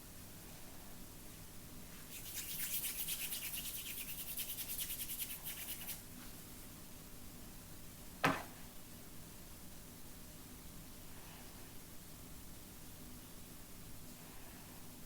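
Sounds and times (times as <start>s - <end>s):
scratchy rubbing of modelling clay: 2.0s - 6.0s.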